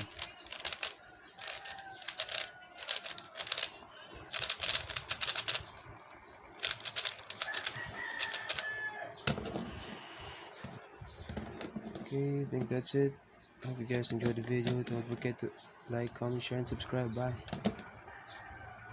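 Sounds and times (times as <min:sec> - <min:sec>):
puzzle cube layers clicking: 0:00.0 - 0:03.7, 0:04.3 - 0:05.8, 0:06.6 - 0:08.7.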